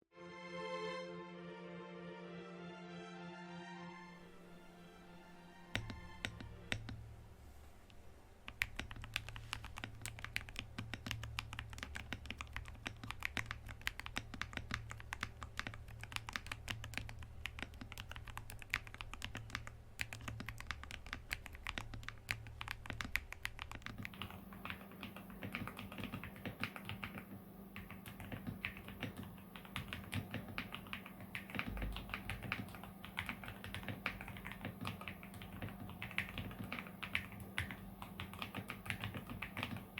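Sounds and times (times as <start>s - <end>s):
mechanical keyboard typing: 8.5s - 39.9s.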